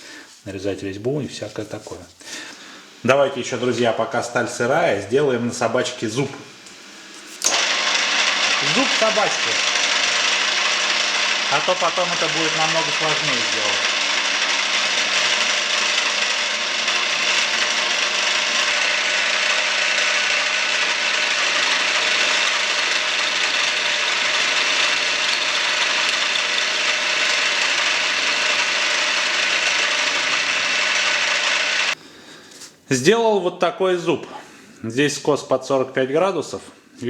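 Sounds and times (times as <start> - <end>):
milling machine cutting metal: 7.4 - 32.0.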